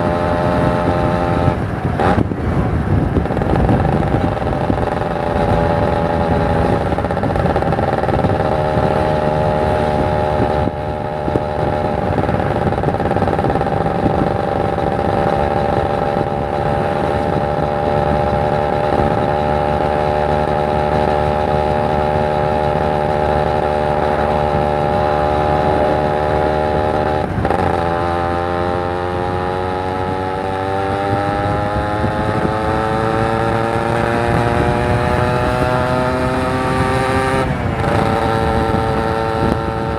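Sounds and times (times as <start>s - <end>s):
motorcycle two-stroke engine revving: 0.0s - 39.9s.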